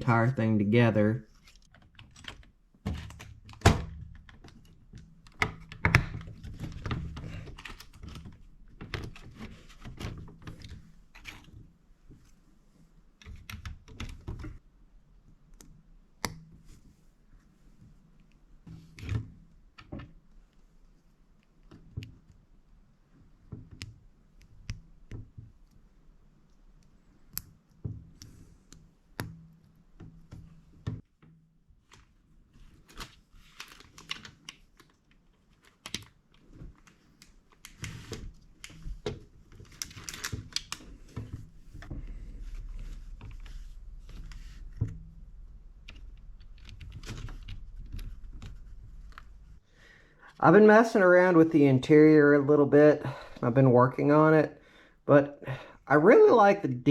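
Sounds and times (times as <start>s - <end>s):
loose pieces rattling and rustling: 37.6s - 49.6s.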